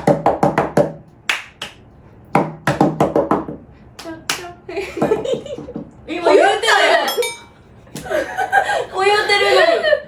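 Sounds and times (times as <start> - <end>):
voices: 6.1 - 7.5, 8.6 - 10.0.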